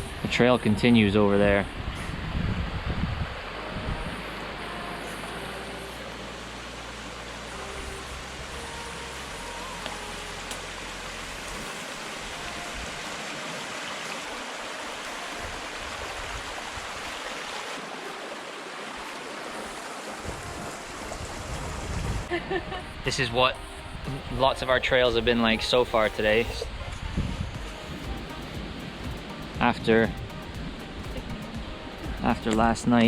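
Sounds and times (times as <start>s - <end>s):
running water rushing: 0.0s - 33.0s.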